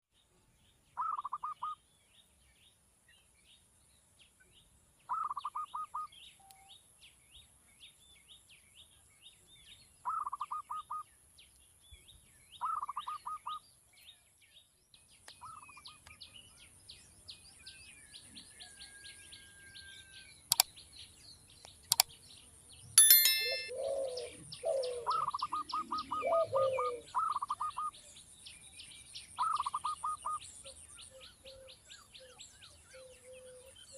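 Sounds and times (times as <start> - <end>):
lower-pitched bird calls: 0.9 - 1.9, 5.1 - 6.8, 10.0 - 11.1, 12.6 - 13.6, 23.2 - 28.0, 29.3 - 33.9
birds chattering trills: 1.0 - 1.8, 23.1 - 33.9
sharp clicks: 20.5 - 20.7, 21.6 - 22.1
faint high chirping: 23.0 - 28.0.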